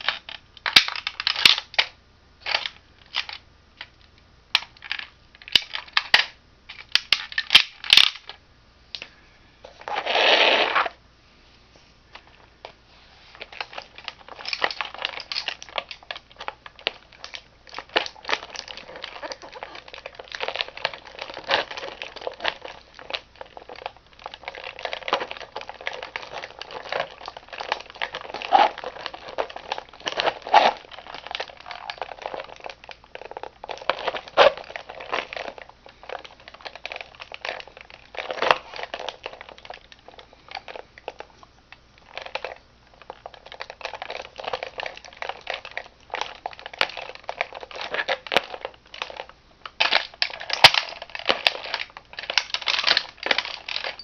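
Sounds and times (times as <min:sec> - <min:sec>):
toy car crunching under shoe: 0:09.8 - 0:11.0, 0:13.4 - 0:41.3, 0:42.1 - 0:54.0.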